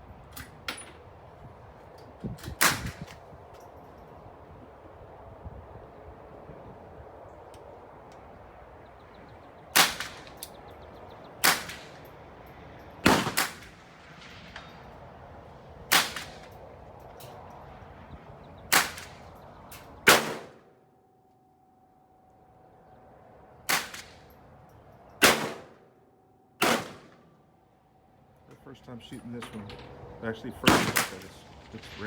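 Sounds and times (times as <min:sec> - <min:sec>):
rifle shots with echo: 0:09.7 - 0:10.5, 0:11.4 - 0:12.1, 0:13.0 - 0:14.8, 0:15.9 - 0:16.5, 0:18.7 - 0:19.3, 0:20.0 - 0:20.7, 0:23.7 - 0:24.3, 0:25.2 - 0:25.9, 0:26.6 - 0:27.4, 0:30.6 - 0:32.0.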